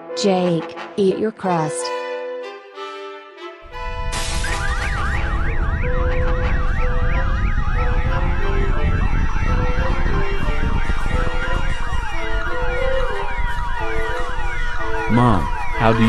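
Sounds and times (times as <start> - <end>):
emergency sirens: 3.7 - 16.0
heavy low rumble: 3.7 - 16.0.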